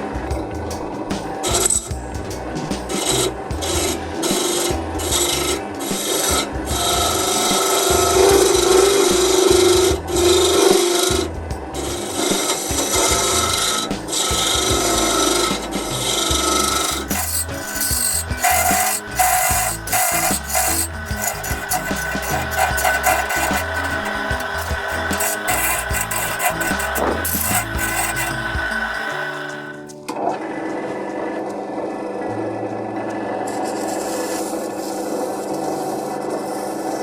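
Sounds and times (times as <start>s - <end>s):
rasp scraping wood: 0.5s - 29.9s.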